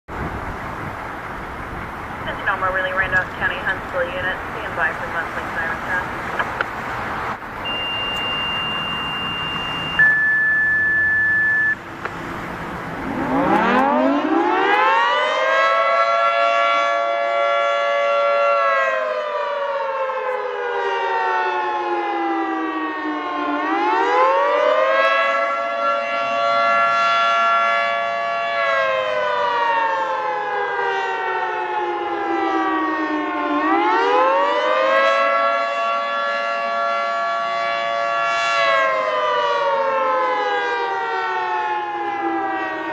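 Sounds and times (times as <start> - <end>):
dual-tone warning siren: 0.2 - 42.9
steady radio tones: 2.2 - 6.7.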